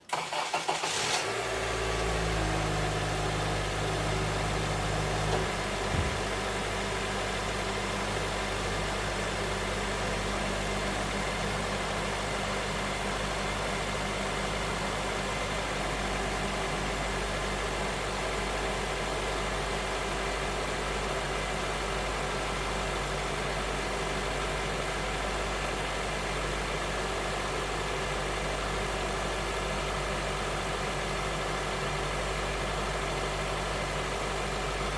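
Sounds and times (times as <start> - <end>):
car engine idling with knock: 4.2 - 12.2.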